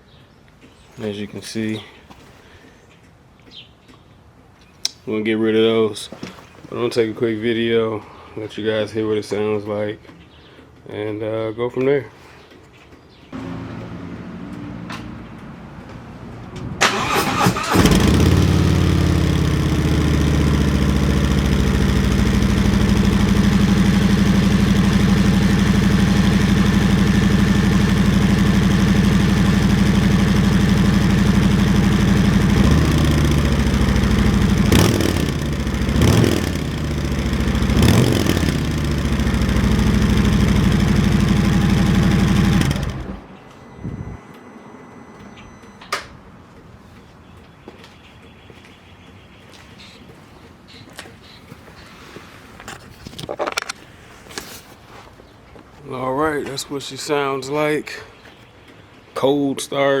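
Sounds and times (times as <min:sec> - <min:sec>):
motorcycle engine idling and revving: 0:13.4 - 0:44.2.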